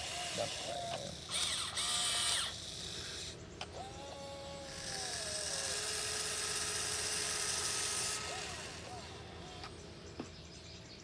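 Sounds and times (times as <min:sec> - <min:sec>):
small electric motors whining: 0:00.0 - 0:10.1.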